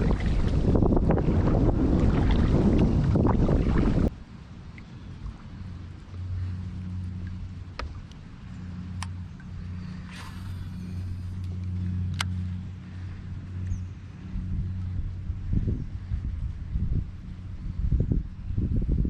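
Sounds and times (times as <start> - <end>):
small motor humming: 5.5 - 18.3.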